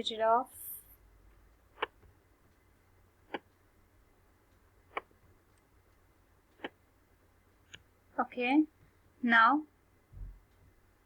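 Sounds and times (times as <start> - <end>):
computer mouse clicks: 1.8 - 2.1.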